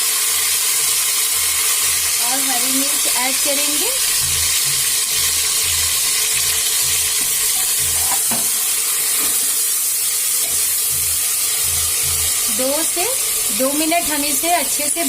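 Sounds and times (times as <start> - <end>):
chicken sizzling in hot oil: 0.0 - 15.0
stirring thuds: 4.0 - 8.5, 10.4 - 14.4.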